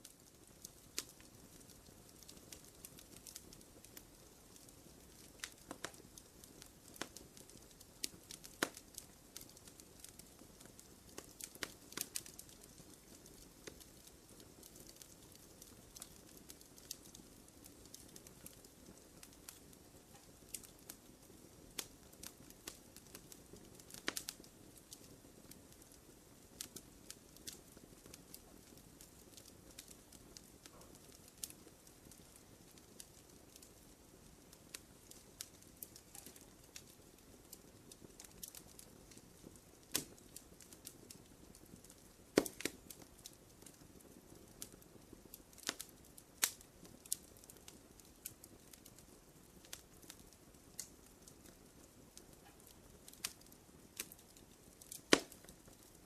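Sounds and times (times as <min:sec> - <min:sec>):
campfire crackling and popping: 0:00.0 - 0:56.0
faint steady hiss: 0:00.0 - 0:56.0.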